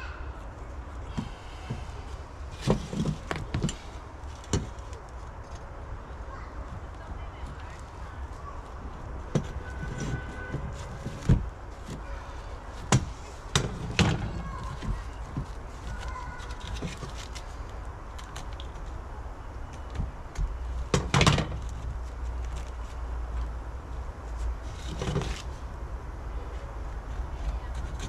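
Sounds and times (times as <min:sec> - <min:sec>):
knocks and clunks: 0:19.9 - 0:21.7.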